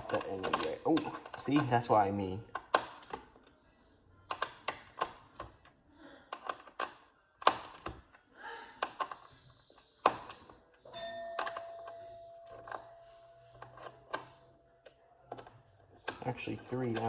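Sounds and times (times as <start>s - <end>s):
screwdriver and metal parts clicking: 0.0s - 3.6s, 15.3s - 17.0s
faint steady tone: 10.8s - 14.9s.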